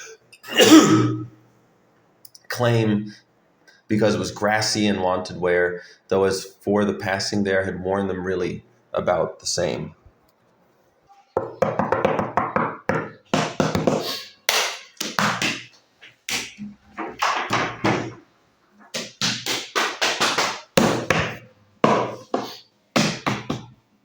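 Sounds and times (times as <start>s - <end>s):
person coughing: 0.0s - 1.4s.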